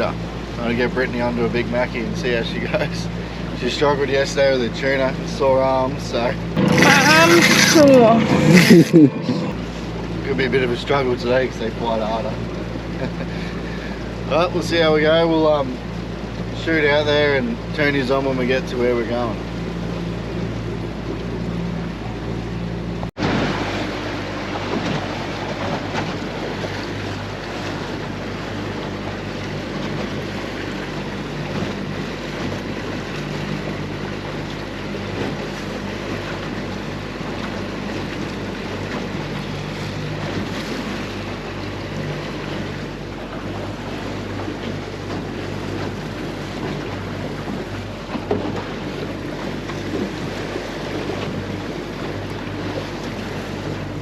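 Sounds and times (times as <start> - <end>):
boat motor running: 0.0 - 54.0
water rushing against hull: 0.0 - 54.0.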